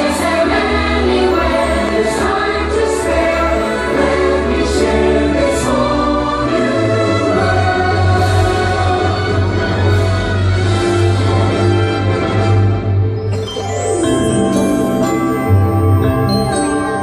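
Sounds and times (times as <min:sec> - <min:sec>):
choir singing: 0:00.0 - 0:10.6
orchestral music with deep bass: 0:00.0 - 0:17.0.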